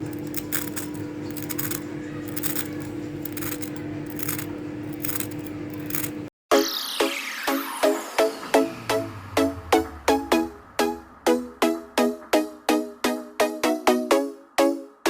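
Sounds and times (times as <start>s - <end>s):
metal utensil clinking on metal: 0.0s - 6.2s.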